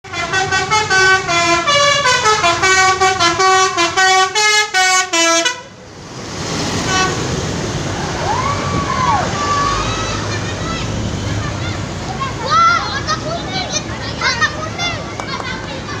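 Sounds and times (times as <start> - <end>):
bus horn playing a melody: 0.0 - 5.8, 6.8 - 7.3.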